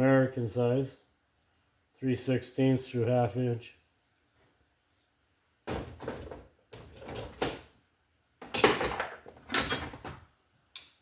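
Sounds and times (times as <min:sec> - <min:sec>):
tools clunking and rattling: 0:05.7 - 0:07.8, 0:08.4 - 0:10.3.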